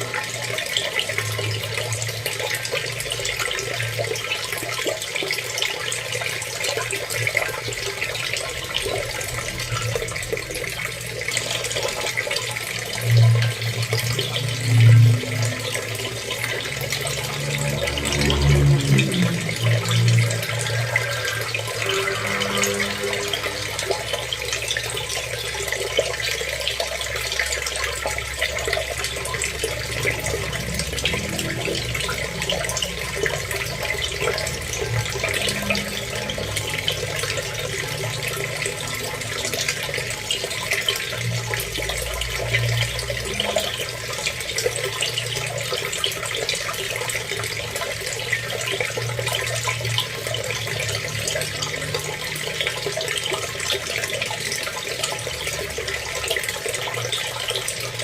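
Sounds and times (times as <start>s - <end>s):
running water: 0.0s - 58.0s.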